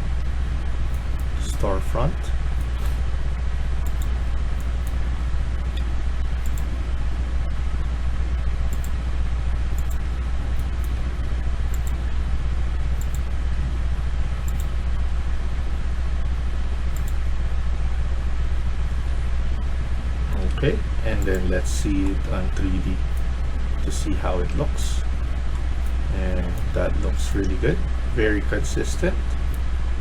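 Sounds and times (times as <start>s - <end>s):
low background hum: 0.0s - 30.0s
computer mouse clicks: 0.9s - 1.7s, 2.6s - 3.0s, 3.8s - 5.0s, 5.7s - 6.8s, 8.7s - 9.0s, 9.7s - 10.0s, 10.6s - 12.0s, 13.0s - 13.3s, 14.4s - 14.8s, 16.9s - 17.2s, 21.2s - 21.5s.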